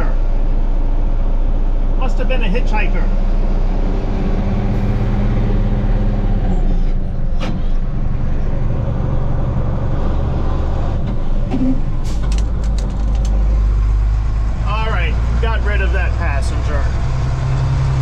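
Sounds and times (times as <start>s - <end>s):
sharp clicks: 12.1s - 13.5s.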